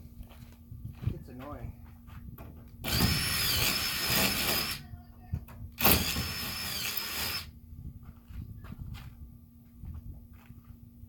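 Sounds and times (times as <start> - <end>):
power tool whining: 2.8 - 4.8, 5.8 - 7.5.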